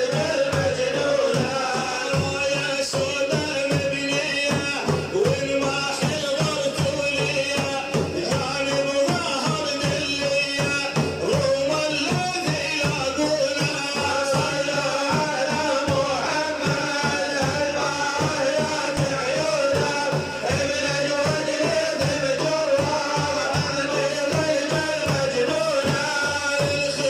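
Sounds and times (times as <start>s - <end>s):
man singing devotional chant: 0.0s - 27.0s
rapid hand drum beats: 0.0s - 27.0s.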